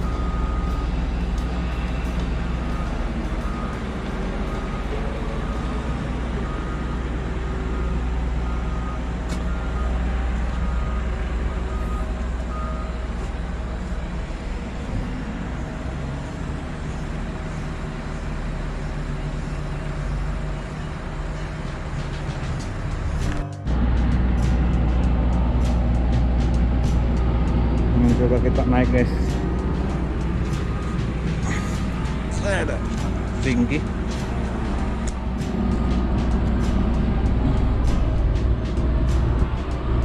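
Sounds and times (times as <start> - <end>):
reversing alarm beeping: 0.0 - 13.9, 26.9 - 39.9
heavy diesel machinery drone: 0.0 - 40.0.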